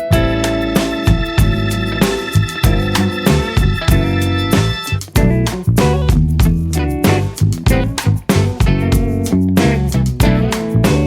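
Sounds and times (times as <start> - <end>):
keyboard instrumental with beat: 0.0 - 5.6.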